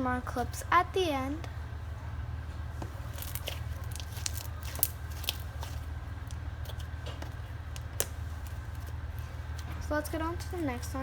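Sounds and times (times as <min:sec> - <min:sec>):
steady low hum: 0:00.0 - 0:11.0
slime squished clicks and pops: 0:03.2 - 0:06.8, 0:07.8 - 0:08.8.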